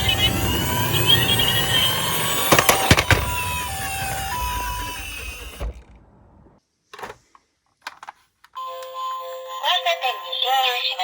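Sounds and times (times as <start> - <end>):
toy car two-tone siren: 0.0 - 5.6, 8.6 - 11.0
plastic clicks: 7.0 - 8.9.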